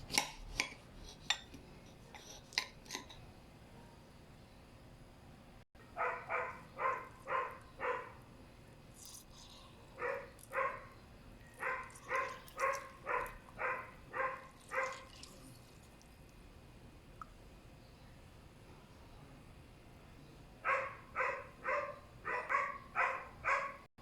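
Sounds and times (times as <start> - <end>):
dog barking high-pitched: 5.9 - 8.2, 10.0 - 11.0, 11.6 - 15.1, 20.6 - 23.9.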